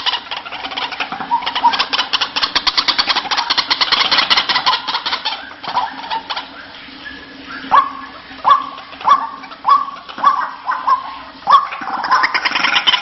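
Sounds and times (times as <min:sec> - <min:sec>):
waterhen chattering call: 0:00.0 - 0:13.0.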